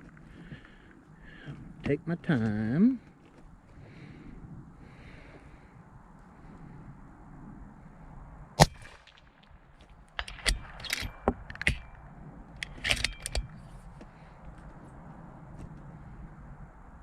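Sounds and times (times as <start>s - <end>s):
loud rifle shot: 8.6s - 9.6s, 10.2s - 11.9s
rifle bolt clicking: 10.2s - 12.0s, 12.6s - 13.7s.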